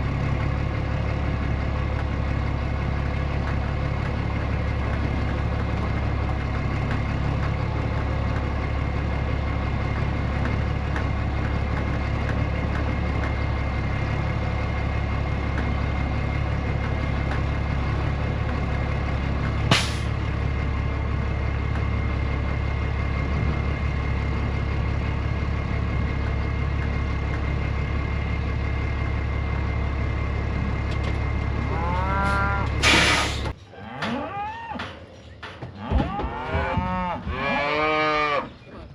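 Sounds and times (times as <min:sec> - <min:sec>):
tractor engine running: 0:00.0 - 0:33.7
cattle mooing: 0:31.6 - 0:32.9, 0:33.7 - 0:35.0, 0:35.7 - 0:38.6.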